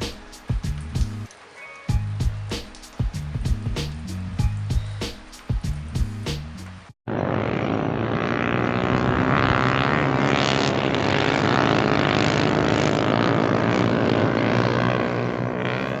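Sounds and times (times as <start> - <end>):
motorcycle engine running: 7.1 - 16.0.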